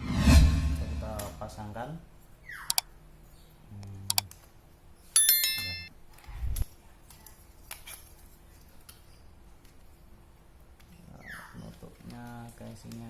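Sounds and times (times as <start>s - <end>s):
sharp small clicks: 2.7s - 2.9s, 3.8s - 4.5s
metallic clink: 5.2s - 5.9s.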